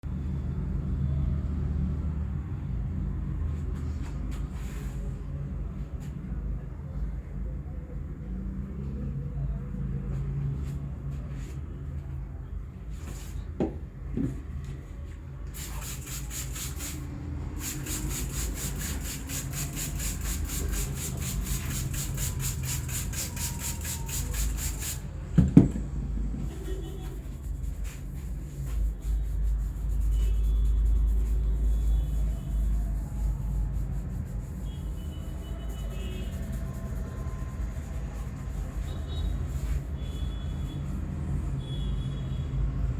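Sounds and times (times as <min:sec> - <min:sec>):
hands rubbing skin and hair: 0:17.6 - 0:25.0, 0:26.4 - 0:40.8.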